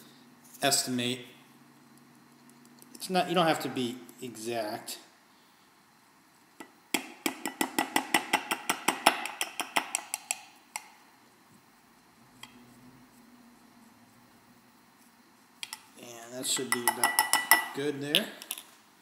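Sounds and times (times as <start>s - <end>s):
spoon clinking against a glass: 16.6s - 17.8s.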